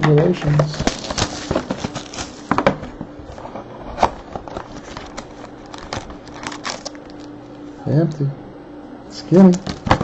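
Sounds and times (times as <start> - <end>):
cards and packaging rustling: 0.4 - 2.6, 4.0 - 7.4.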